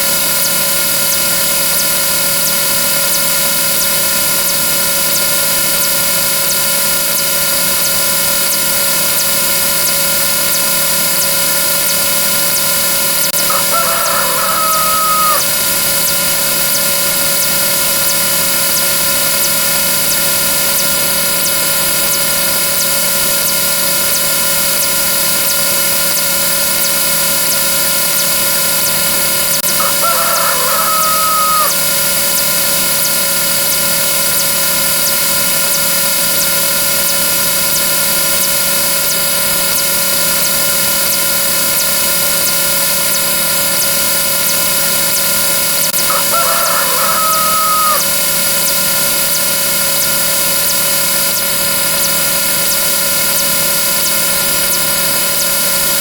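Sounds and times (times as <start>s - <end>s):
rooster crowing: 13.4s - 15.6s, 29.6s - 32.0s, 46.0s - 48.3s.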